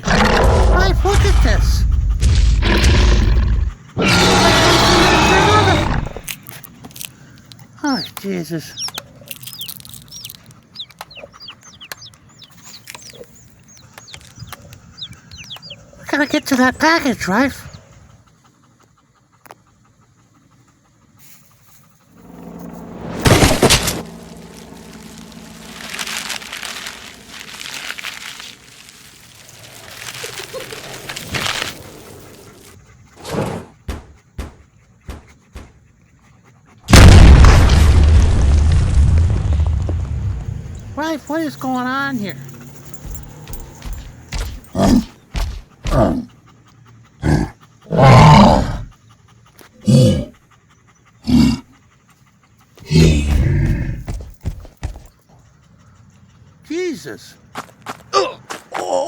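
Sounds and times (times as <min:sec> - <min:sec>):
birds chirping: 0:03.0 - 0:19.2, 0:21.6 - 0:32.8, 0:40.3 - 0:46.8
soft swell: 0:22.1 - 0:30.2
deep rumbling blast: 0:22.2 - 0:30.0, 0:36.9 - 0:41.0
sharp knocks: 0:33.9 - 0:35.8.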